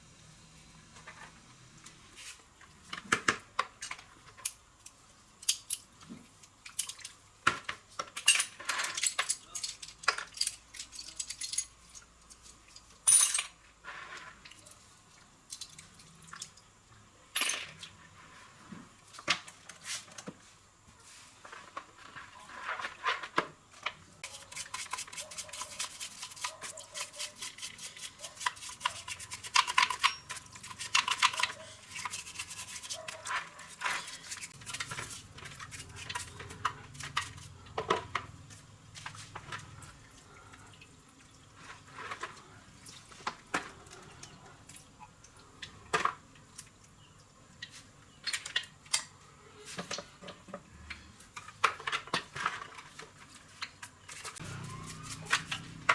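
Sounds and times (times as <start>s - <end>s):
small metal parts clinking: 8.2s - 12.1s, 12.8s - 13.6s, 17.4s - 17.8s, 29.6s - 31.5s.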